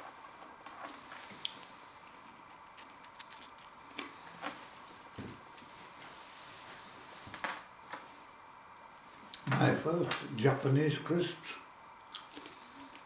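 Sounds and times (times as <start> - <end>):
potato crisps crunched and chewed: 2.5 - 3.8.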